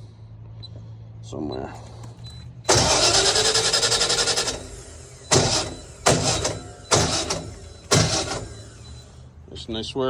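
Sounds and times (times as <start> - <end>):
engine starter cranking: 1.9 - 9.2.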